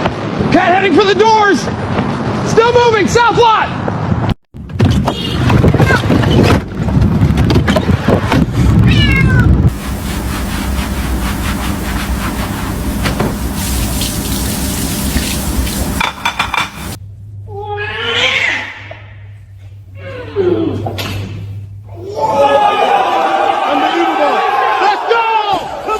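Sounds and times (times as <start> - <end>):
cat meowing: 8.9 - 9.6
steady hiss: 9.7 - 17.0.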